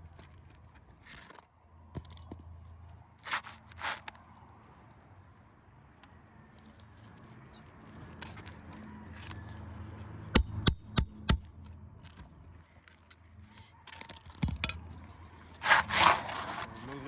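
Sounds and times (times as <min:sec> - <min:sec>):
hammer striking metal: 0:10.4 - 0:11.5, 0:14.4 - 0:14.9
scraping and light clicks: 0:12.0 - 0:17.0.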